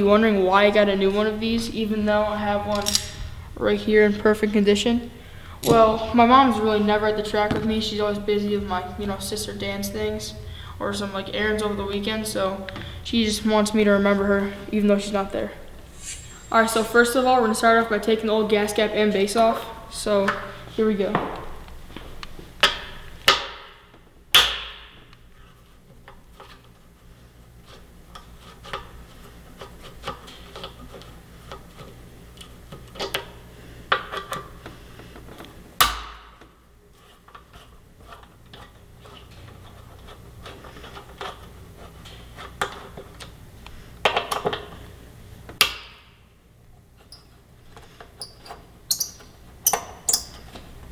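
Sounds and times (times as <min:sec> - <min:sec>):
hand tools clicking and scraping: 0:02.7 - 0:03.4
sharp metal clanks: 0:02.7 - 0:03.4.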